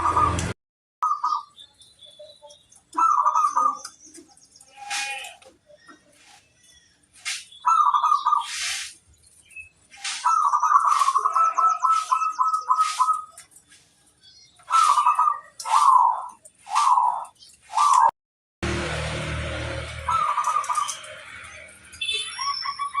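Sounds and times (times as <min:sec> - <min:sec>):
dove cooing: 0:02.9 - 0:03.9, 0:20.1 - 0:21.2
short high hissing bursts: 0:08.4 - 0:09.0.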